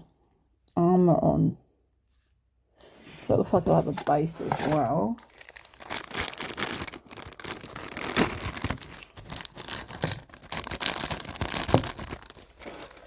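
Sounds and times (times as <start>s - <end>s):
plastic wrapping crinkling: 4.6s - 13.0s.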